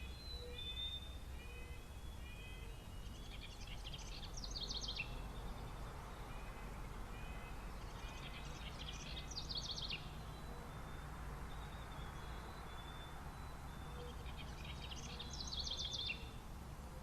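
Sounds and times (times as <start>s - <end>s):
songbird singing: 0.0s - 17.0s.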